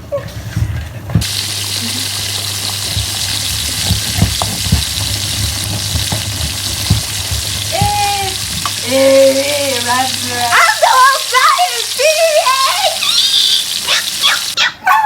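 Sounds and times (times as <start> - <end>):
food sizzling in hot oil: 1.2 - 14.6
utensils knocking: 2.3 - 11.1.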